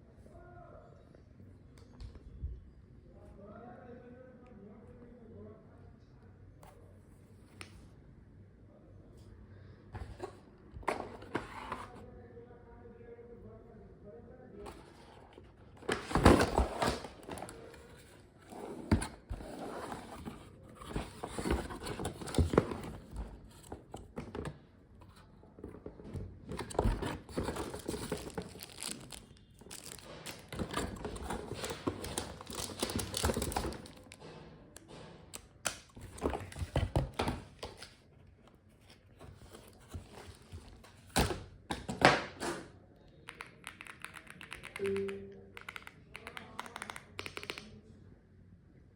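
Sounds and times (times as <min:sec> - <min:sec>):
wrapping crinkling and rustling: 0:27.2 - 0:34.2.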